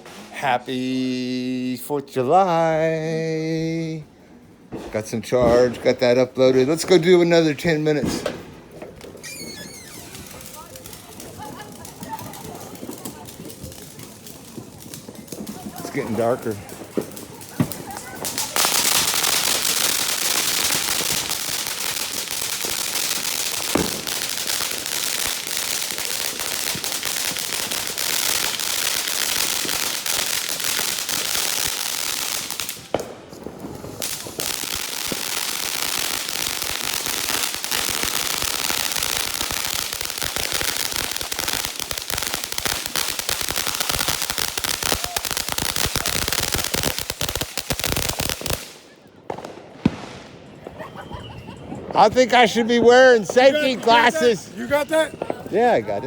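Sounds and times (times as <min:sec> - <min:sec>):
fireworks crackling and popping: 0:00.0 - 0:56.0
loud firework bang: 0:08.0 - 0:10.3, 0:23.6 - 0:24.5, 0:49.3 - 0:50.8.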